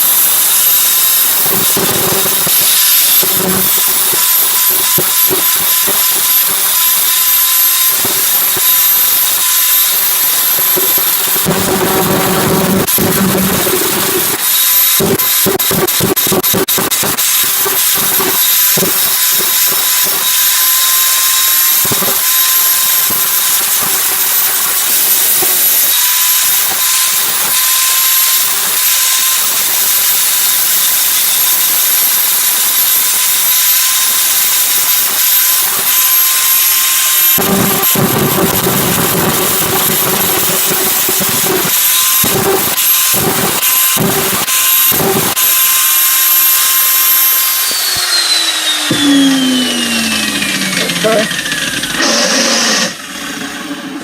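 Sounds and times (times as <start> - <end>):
angle grinder grinding steel: 0.0 - 54.0.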